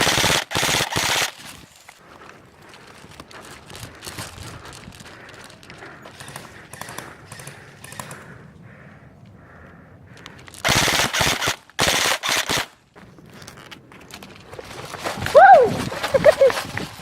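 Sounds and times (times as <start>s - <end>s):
airsoft rifle bursts: 0.0s - 1.6s, 6.1s - 8.2s, 10.6s - 12.8s
faint footsteps: 1.4s - 10.6s, 12.8s - 17.0s.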